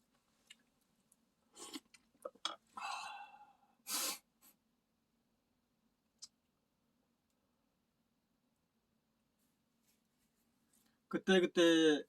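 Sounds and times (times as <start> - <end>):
person eating mouth noises: 1.5 - 2.6
sharp breath: 2.8 - 4.3.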